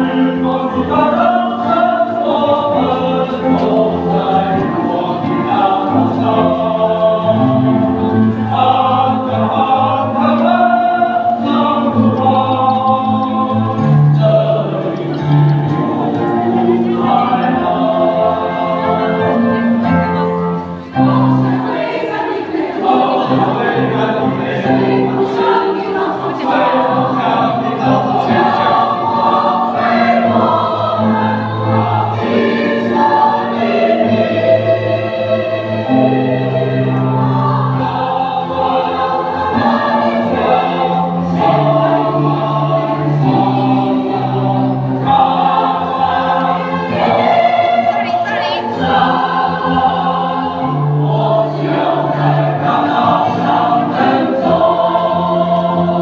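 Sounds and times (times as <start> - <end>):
choir singing in harmony: 0.0 - 56.0.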